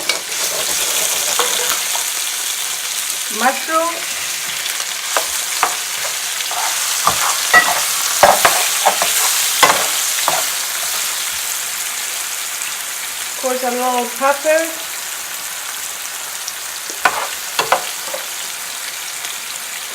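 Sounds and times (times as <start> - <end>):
utensil scraping a pan: 0.0 - 2.2, 4.1 - 11.2
vegetables sizzling in a frying pan: 0.0 - 19.9.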